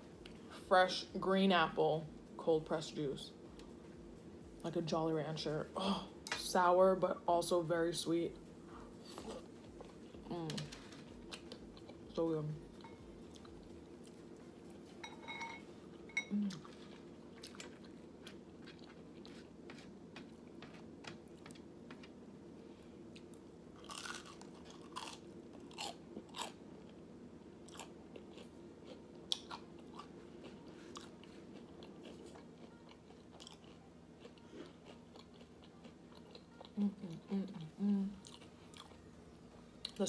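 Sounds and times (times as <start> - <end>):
person chewing food: 12.7 - 15.0, 16.2 - 22.1, 23.1 - 27.0, 27.6 - 39.1.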